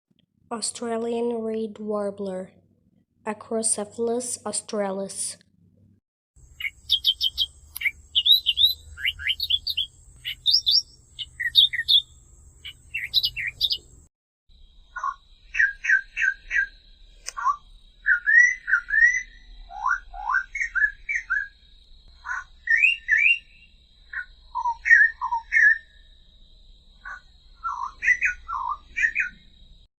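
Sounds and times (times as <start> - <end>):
slowed birdsong: 6.4 - 14.1, 15.5 - 26.1, 27.0 - 29.7
warbler singing: 6.4 - 14.1, 17.5 - 21.6, 22.3 - 25.9, 27.1 - 29.5.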